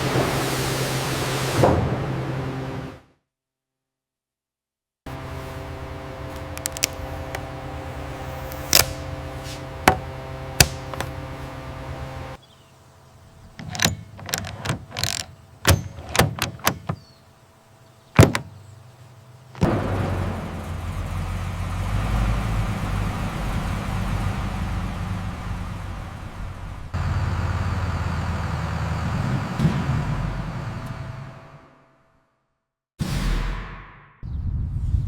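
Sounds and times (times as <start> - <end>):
steady hum: 5.1 - 14.2
vehicle engine running: 5.1 - 32.0
door thunk: 9.9 - 11.1, 18.2 - 18.6
knocks: 9.9 - 11.1, 18.2 - 18.6.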